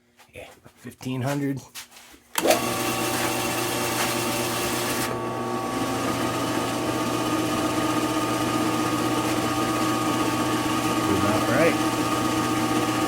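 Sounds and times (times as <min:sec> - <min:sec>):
drill press motor hum: 0:02.4 - 0:13.0
drill bit hissing through wood: 0:08.6 - 0:13.0.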